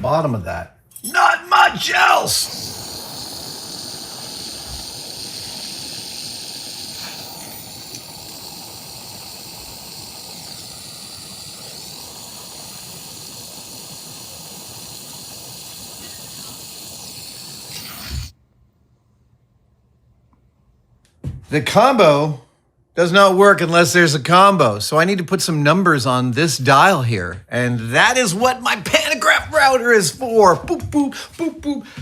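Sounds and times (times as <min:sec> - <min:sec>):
small lathe running: 0:02.3 - 0:18.3.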